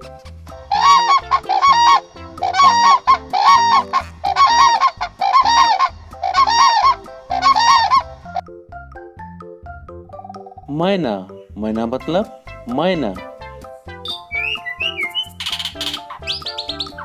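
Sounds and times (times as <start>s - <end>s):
crane trumpeting calls: 0.7s - 8.4s, 14.0s - 17.0s.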